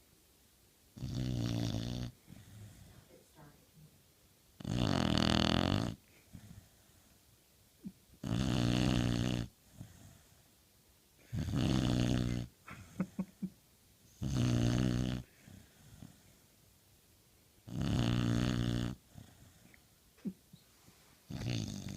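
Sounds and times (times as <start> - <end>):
dog snoring: 1.0 - 3.1, 4.6 - 6.7, 8.2 - 10.4, 11.2 - 12.5, 14.2 - 16.3, 17.6 - 19.7, 21.3 - 21.9.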